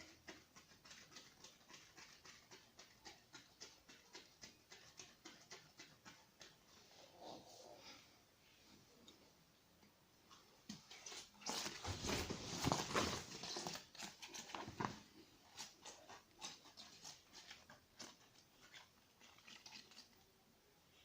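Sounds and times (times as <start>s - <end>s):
cat scrambling and rustling: 10.8s - 18.2s.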